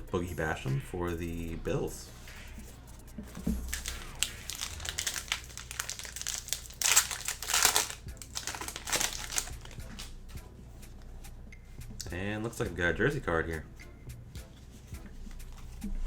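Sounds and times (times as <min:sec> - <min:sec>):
foil wrapper crinkling: 0:03.3 - 0:10.1.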